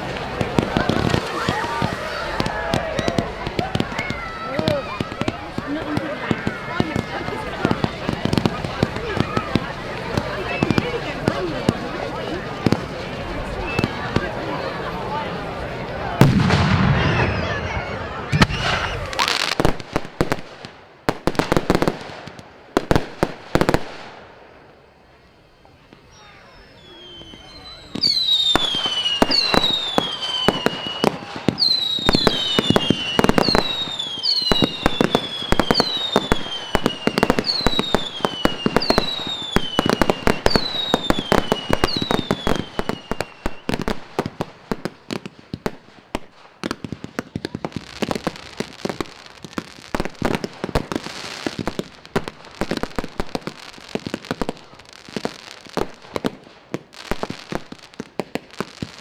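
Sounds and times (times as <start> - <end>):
firework bangs: 0.0 - 14.7, 16.0 - 24.8, 25.9 - 59.0
firework crackling and pops: 0.0 - 14.7, 16.0 - 24.9, 25.8 - 59.0
whistling fireworks: 0.0 - 15.1, 15.8 - 24.3, 25.1 - 59.0.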